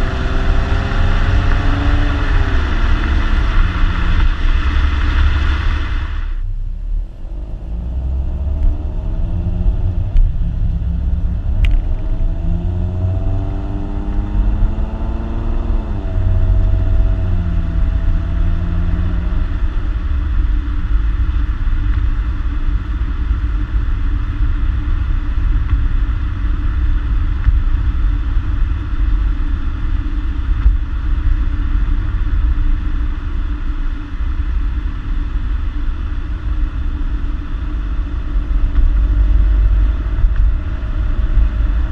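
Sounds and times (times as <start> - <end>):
car engine driving: 0.0 - 41.9.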